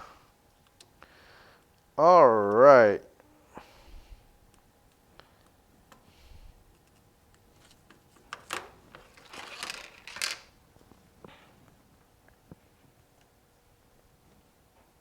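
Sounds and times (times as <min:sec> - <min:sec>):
scraping and rustling: 0:06.8 - 0:10.6.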